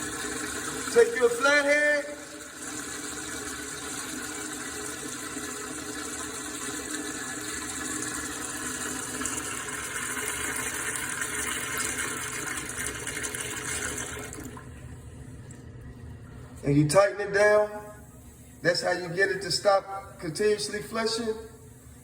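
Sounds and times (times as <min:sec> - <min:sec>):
urinal flushing continuously: 0:00.0 - 0:16.4.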